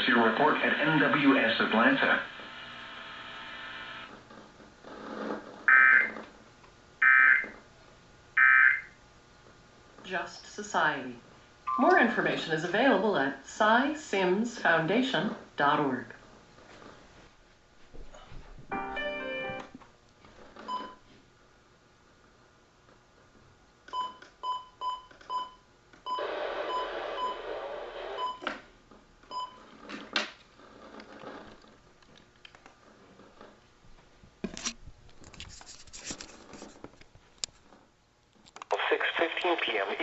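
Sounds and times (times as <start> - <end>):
short electronic beeps: 11.7 - 12.2.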